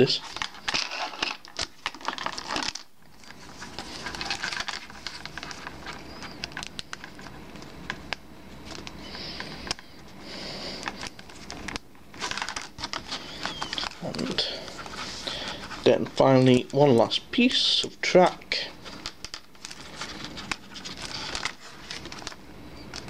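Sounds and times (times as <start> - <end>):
rustling: 10.8 - 16.8, 18.8 - 23.0.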